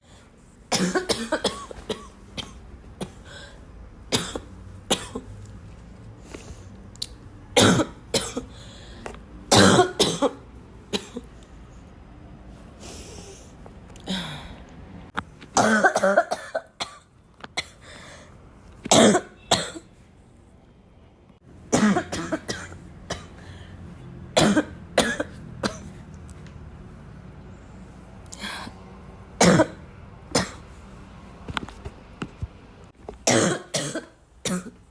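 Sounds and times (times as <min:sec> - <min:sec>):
person coughing: 0:00.7 - 0:03.4, 0:04.1 - 0:05.3, 0:07.6 - 0:08.5, 0:09.5 - 0:11.3, 0:15.6 - 0:17.0, 0:18.9 - 0:19.9, 0:21.7 - 0:23.5, 0:24.4 - 0:26.0, 0:29.4 - 0:30.6, 0:33.3 - 0:34.8
person breathing: 0:03.2 - 0:03.7, 0:08.5 - 0:09.2, 0:12.7 - 0:14.8, 0:17.8 - 0:18.4, 0:23.4 - 0:24.0.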